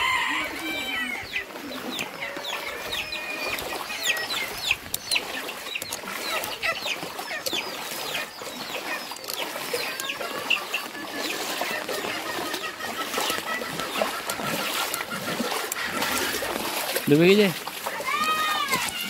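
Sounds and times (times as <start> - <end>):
birds chirping: 0.0 - 19.0
faint clicks: 3.5 - 6.6.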